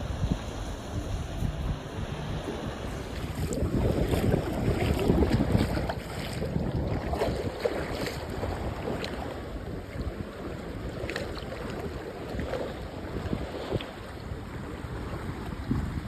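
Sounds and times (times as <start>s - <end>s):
wind buffeting microphone: 0.0s - 16.0s
small waves on beach: 1.8s - 16.0s.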